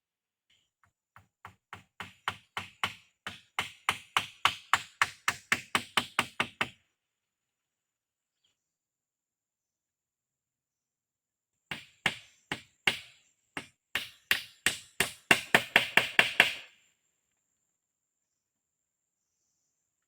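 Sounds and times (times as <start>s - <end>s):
tool striking wood: 1.2s - 6.8s, 11.7s - 16.7s.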